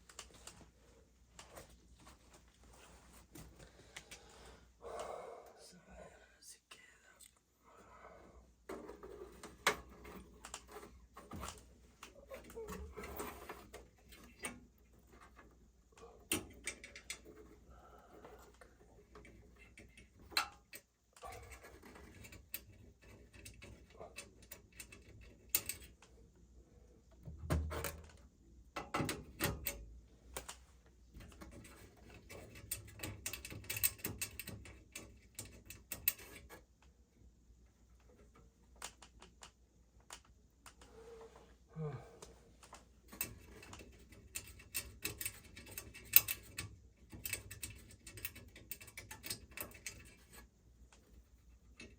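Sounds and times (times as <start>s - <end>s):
metal parts clicking and tapping: 16.2s - 17.5s, 18.3s - 26.1s, 28.8s - 29.8s, 30.4s - 36.9s, 42.6s - 51.9s.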